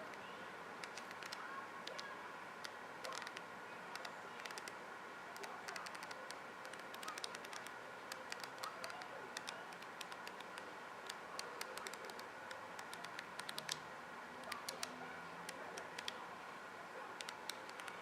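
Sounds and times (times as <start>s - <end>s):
faint steady hiss: 0.0s - 18.0s
bird beak pecking at seed: 0.8s - 4.8s, 5.4s - 13.8s.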